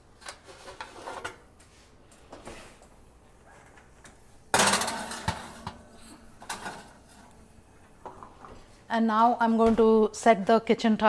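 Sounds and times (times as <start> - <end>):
metal tray clattering: 4.5 - 7.3.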